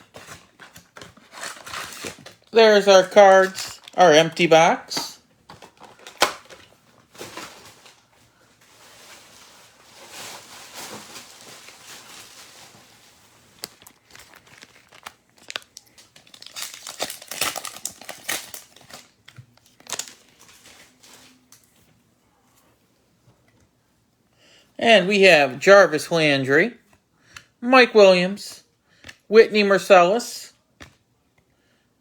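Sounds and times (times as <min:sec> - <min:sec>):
wrapper tearing and crinkling: 0:00.0 - 0:04.4, 0:05.6 - 0:08.1, 0:08.7 - 0:21.6
cards being handled: 0:00.0 - 0:06.4, 0:13.6 - 0:20.8.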